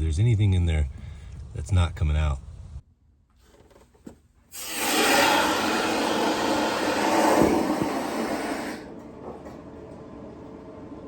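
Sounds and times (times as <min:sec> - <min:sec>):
water rushing from pipe: 0:04.6 - 0:08.9.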